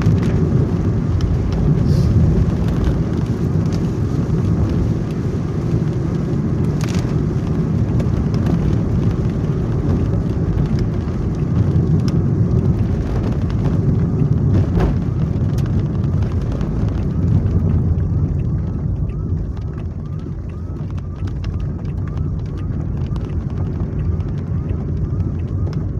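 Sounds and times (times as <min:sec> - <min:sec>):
car engine and road noise: 0:00.0 - 0:25.9.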